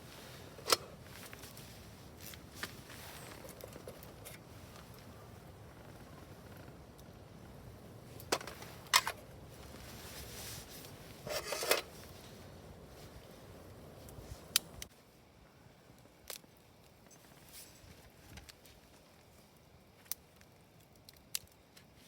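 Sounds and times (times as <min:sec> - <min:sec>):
scraping rustle: 0:08.3 - 0:13.3.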